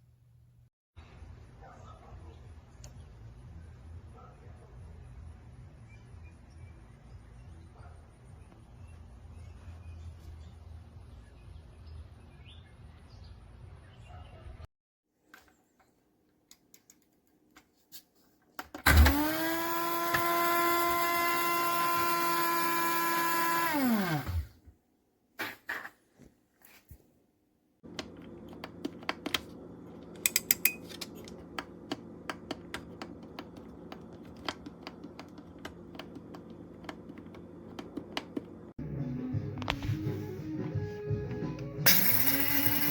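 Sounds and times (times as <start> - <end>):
small electric motor whine: 18.9 - 24.5, 41.9 - 42.9.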